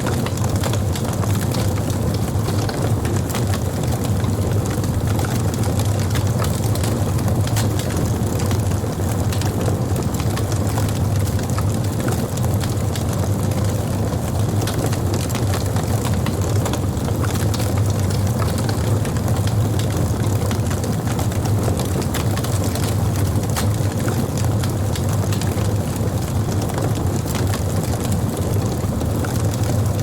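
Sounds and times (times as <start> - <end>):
burning wood crackling: 0.0 - 30.0
campfire flames roaring: 0.0 - 30.0.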